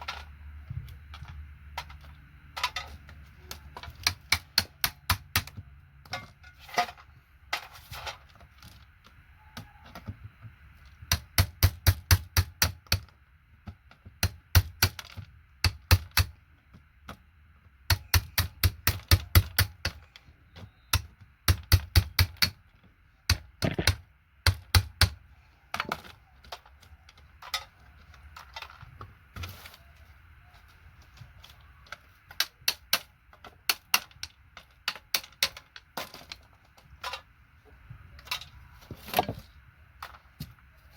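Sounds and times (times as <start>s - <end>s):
plastic parts clicking and snapping: 1.0s - 6.4s, 17.8s - 29.9s, 31.0s - 37.2s.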